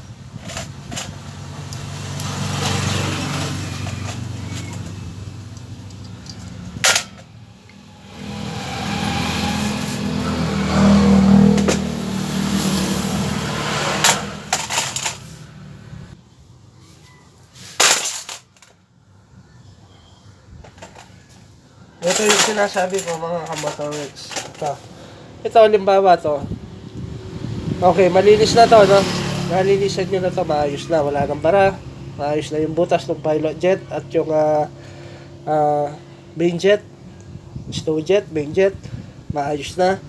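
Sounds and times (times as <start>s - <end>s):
metal parts clicking: 0.4s - 7.4s, 14.0s - 15.4s, 17.7s - 18.7s, 22.0s - 24.8s.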